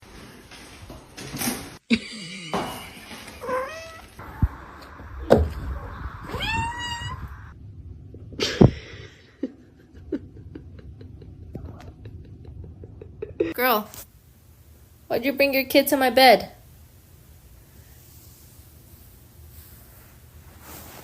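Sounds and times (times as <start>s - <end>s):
cat meowing: 3.4s - 4.2s, 5.6s - 7.6s.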